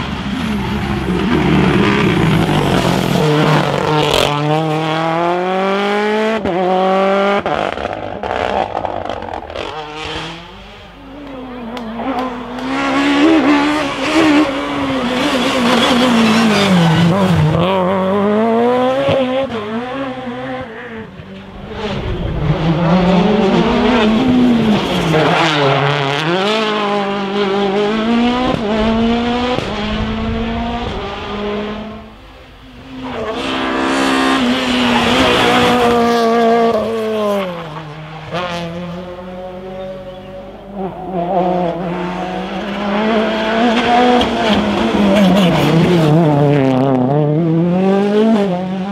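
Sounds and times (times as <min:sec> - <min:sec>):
rally car engines revving past: 0:00.0 - 0:48.9.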